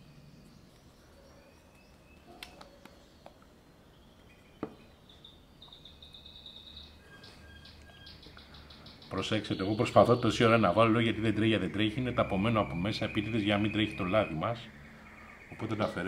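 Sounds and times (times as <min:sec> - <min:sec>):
faint birds chirping: 0:00.0 - 0:16.0
bird trill: 0:03.8 - 0:16.0.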